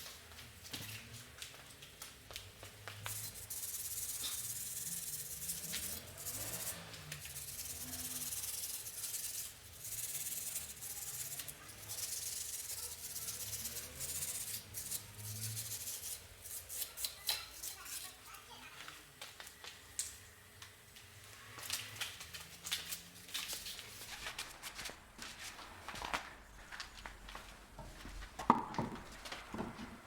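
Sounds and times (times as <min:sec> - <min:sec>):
rasping scraping strokes: 0:03.1 - 0:18.2.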